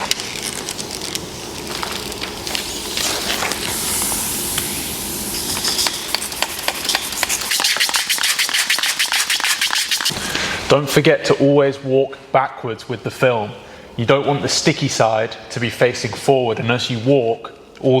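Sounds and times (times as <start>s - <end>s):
plastic film crackling: 0.0s - 3.8s
hissing sprays: 2.3s - 10.2s.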